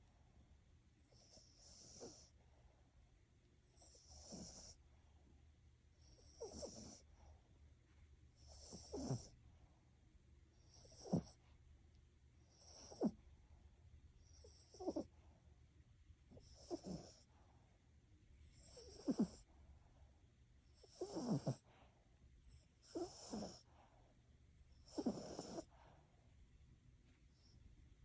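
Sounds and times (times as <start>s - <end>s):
dog snoring: 1.0s - 2.4s, 3.6s - 4.8s, 5.9s - 7.2s, 8.3s - 9.4s, 10.6s - 11.5s, 12.4s - 13.2s, 14.2s - 15.1s, 16.3s - 17.3s, 18.4s - 19.5s, 20.6s - 23.8s, 24.7s - 26.0s.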